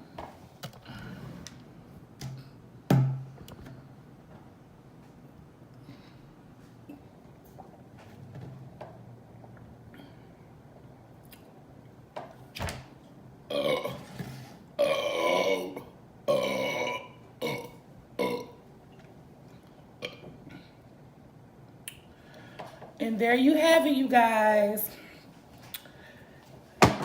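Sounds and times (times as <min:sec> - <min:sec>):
woman burping: 0:13.5 - 0:14.0, 0:14.8 - 0:18.6.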